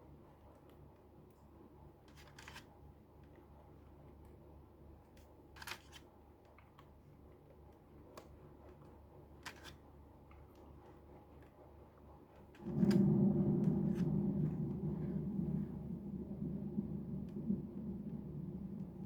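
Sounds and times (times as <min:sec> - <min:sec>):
steady low hum: 0:12.6 - 0:19.0.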